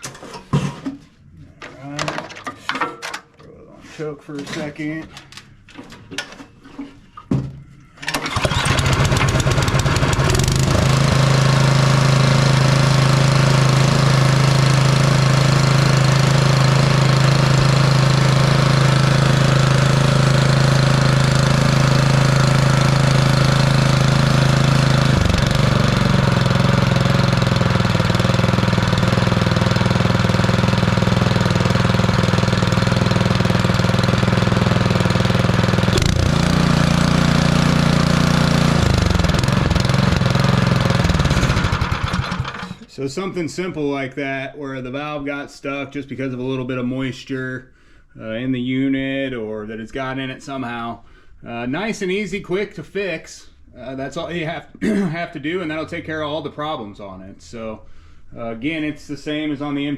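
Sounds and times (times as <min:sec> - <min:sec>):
snowblower engine running: 0:08.1 - 0:42.9.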